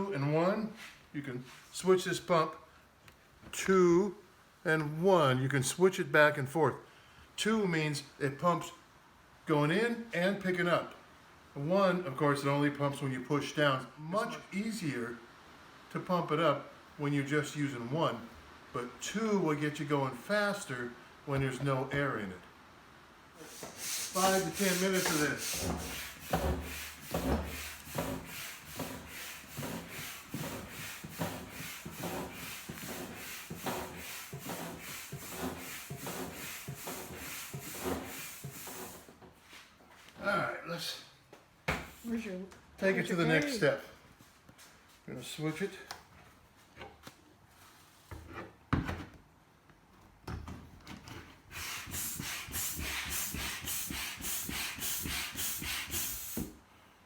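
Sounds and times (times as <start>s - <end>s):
hand pump rasping air: 23.5s - 39.1s, 51.5s - 56.5s.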